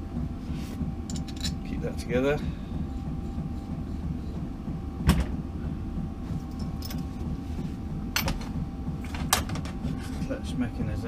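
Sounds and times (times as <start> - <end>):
low background hum: 0.0 - 11.0
metal parts knocking on workbench: 8.2 - 8.5.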